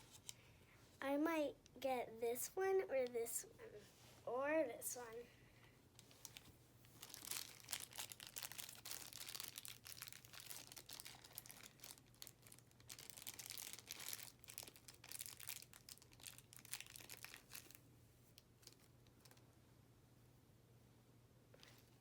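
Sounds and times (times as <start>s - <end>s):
plastic packaging crinkling and tearing: 6.0s - 19.4s.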